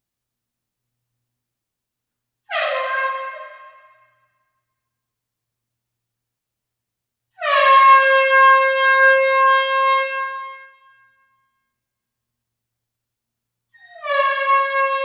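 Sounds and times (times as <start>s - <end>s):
air horn blast in a hall: 2.5s - 4.4s, 7.4s - 11.2s, 14.0s - 15.0s.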